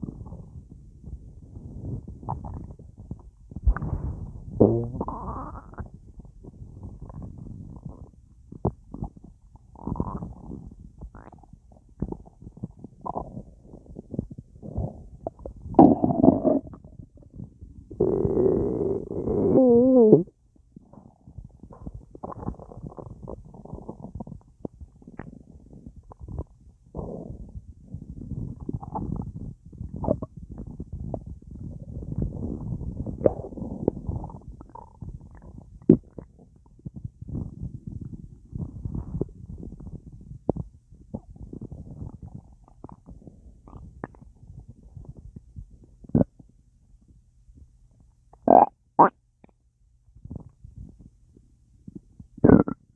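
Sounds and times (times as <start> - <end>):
stomach gurgling: 0.0 - 49.6, 50.2 - 52.9.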